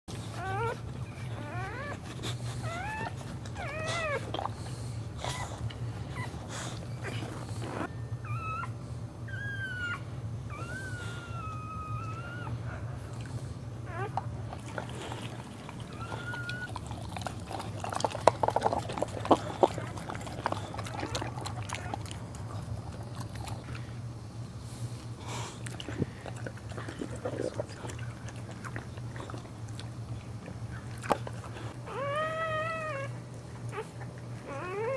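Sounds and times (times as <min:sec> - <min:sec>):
steady low hum: 0:00.1 - 0:34.9
dog whimpering and squealing: 0:00.2 - 0:04.5, 0:05.2 - 0:12.7, 0:13.8 - 0:14.2, 0:15.7 - 0:22.2, 0:31.7 - 0:34.9.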